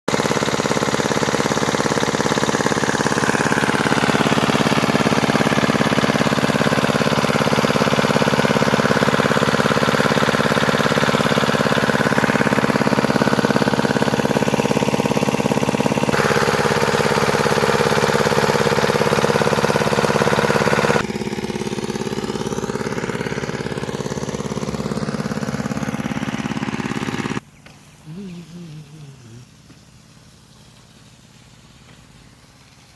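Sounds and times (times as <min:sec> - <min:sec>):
engine humming: 0:00.1 - 0:32.9.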